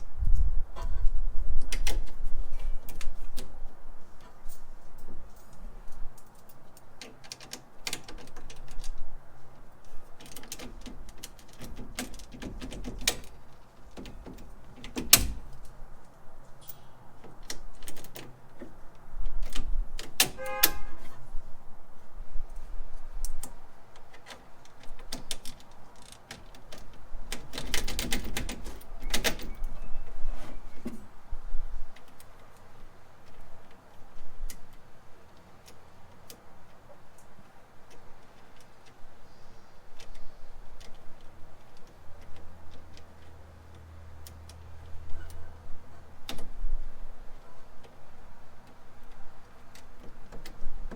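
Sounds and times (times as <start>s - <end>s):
metallic ring: 16.6s - 17.0s.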